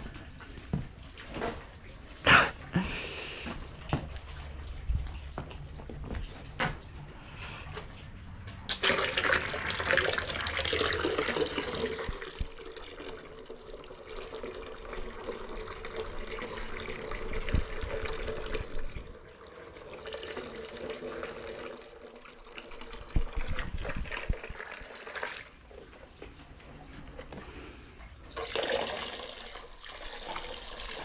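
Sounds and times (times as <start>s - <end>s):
hose water running into container: 8.7s - 25.8s, 28.3s - 31.0s.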